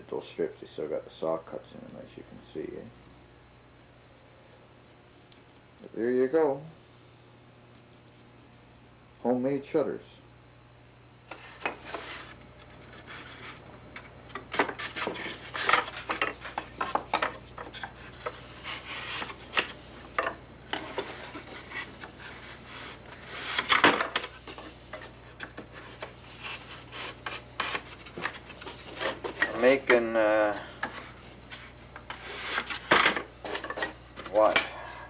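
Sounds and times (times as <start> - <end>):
wood scraping on wood: 11.3 - 35.0
wooden pieces knocking and clattering: 14.0 - 18.4, 23.5 - 26.1, 32.4 - 34.7.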